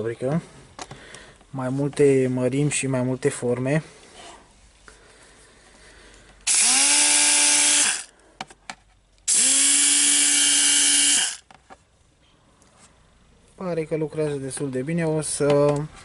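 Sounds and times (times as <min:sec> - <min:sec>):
air die grinder whining: 0:06.4 - 0:08.1, 0:09.3 - 0:11.5.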